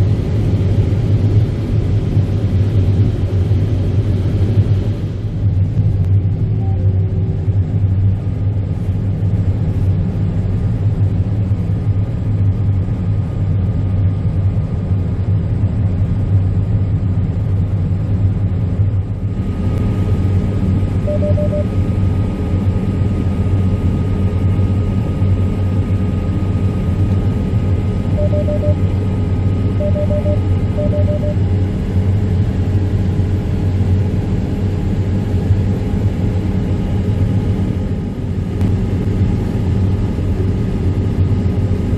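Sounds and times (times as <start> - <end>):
short beeps: 21.0 - 21.7, 28.1 - 28.8, 29.8 - 31.4.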